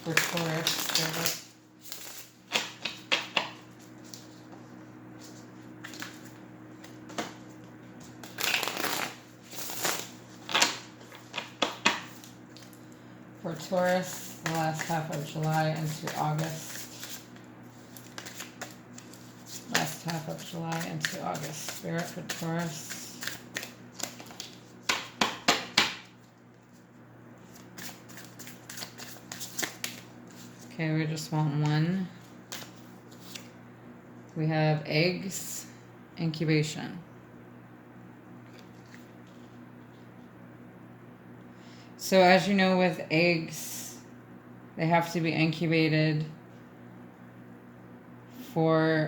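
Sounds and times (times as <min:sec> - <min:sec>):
cards being shuffled: 0:00.0 - 0:04.6, 0:05.2 - 0:12.7, 0:13.6 - 0:25.9, 0:27.4 - 0:30.7, 0:32.5 - 0:33.6.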